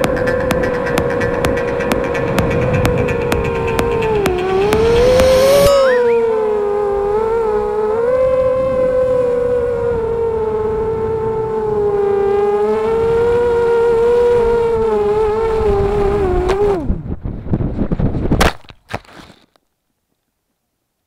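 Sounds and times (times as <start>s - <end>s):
sharp knocks: 0.0s - 5.8s
quadcopter motors whining: 0.0s - 16.9s
low wind rumble: 0.0s - 18.4s.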